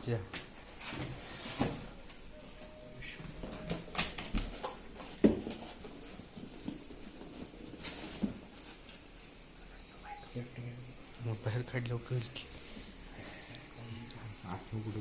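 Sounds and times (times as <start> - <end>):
cardboard packaging rustling: 0.4 - 9.2.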